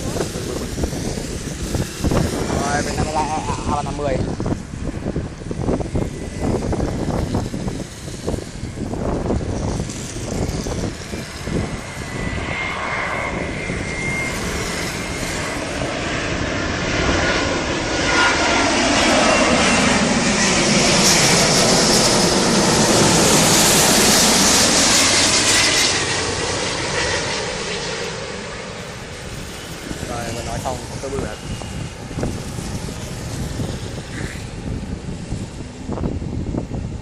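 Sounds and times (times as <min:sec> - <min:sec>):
jet airliner passing overhead: 0:00.0 - 0:37.0.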